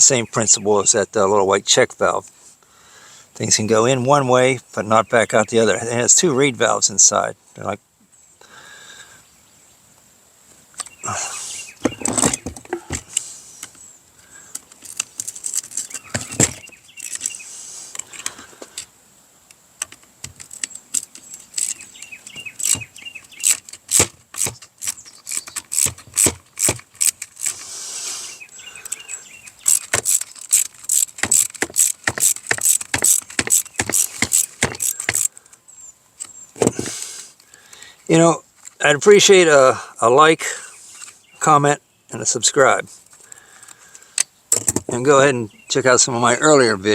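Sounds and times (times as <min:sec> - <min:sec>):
tools and parts clicking: 0:14.5 - 0:17.4, 0:19.8 - 0:27.7, 0:28.8 - 0:35.6.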